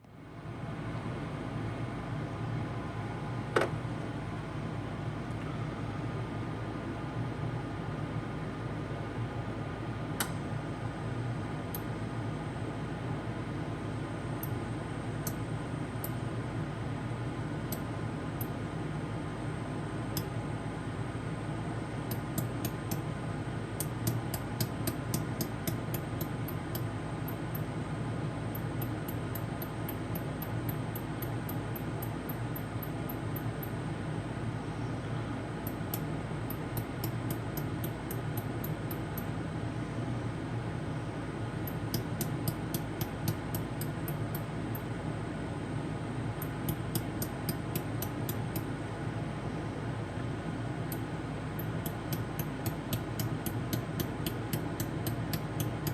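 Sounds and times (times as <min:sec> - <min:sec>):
steady low hum: 0:00.0 - 0:55.9
laser welder ticking: 0:22.1 - 0:23.0, 0:23.8 - 0:27.7, 0:28.5 - 0:33.7, 0:35.7 - 0:39.3, 0:41.6 - 0:44.9, 0:46.4 - 0:48.7, 0:50.9 - 0:55.9.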